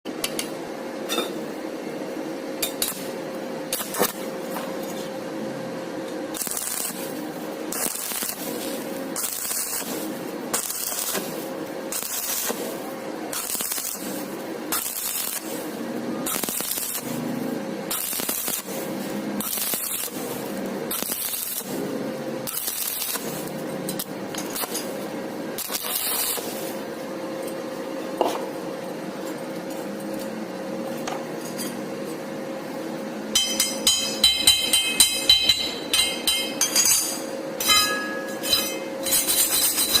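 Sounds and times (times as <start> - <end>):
welding arc crackling: 2.6 - 5.1, 6.2 - 26.9, 39.0 - 40.0.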